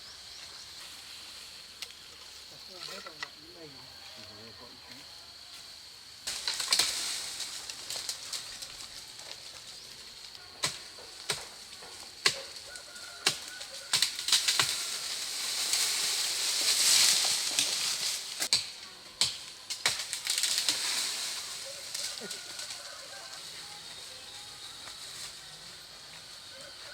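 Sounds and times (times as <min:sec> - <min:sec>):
branches and leaves rustling: 0:00.0 - 0:26.9
twigs snapping: 0:06.3 - 0:23.3.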